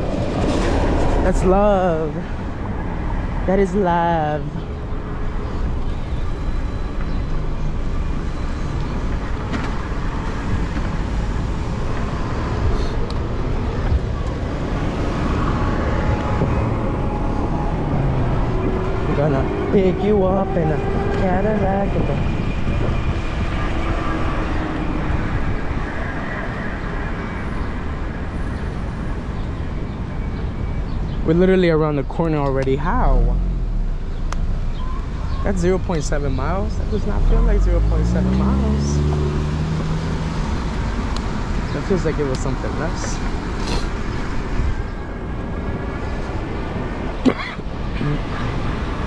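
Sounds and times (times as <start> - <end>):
road and traffic noise: 0.0 - 49.0
wind buffeting microphone: 10.0 - 26.2.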